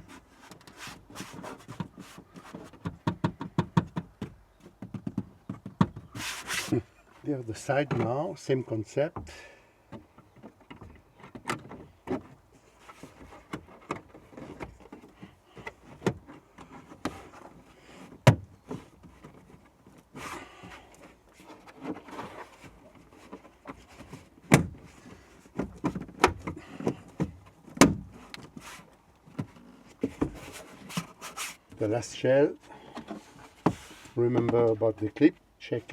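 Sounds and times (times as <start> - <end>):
plastic rubbing and scraping: 0.0 - 8.2, 9.9 - 35.2.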